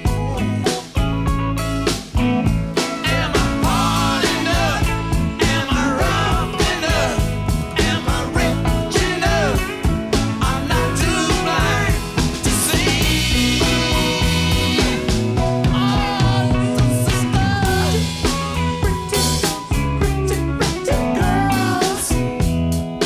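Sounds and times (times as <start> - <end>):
rock music with singing: 0.0 - 23.0.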